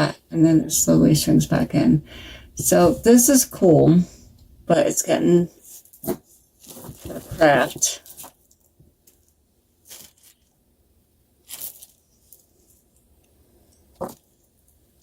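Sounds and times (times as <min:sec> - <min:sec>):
bead jewelry rustling: 0:05.7 - 0:10.6, 0:11.4 - 0:13.1.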